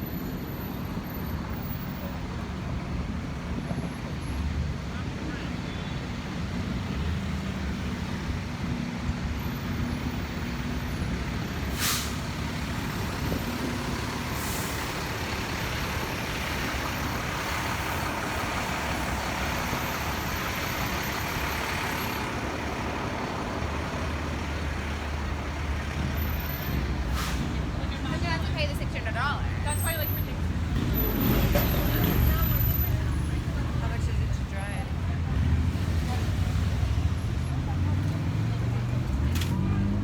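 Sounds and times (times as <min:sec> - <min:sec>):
road traffic rumble: 0:00.0 - 0:40.0
short sharp hisses: 0:11.7 - 0:12.4, 0:27.1 - 0:27.6.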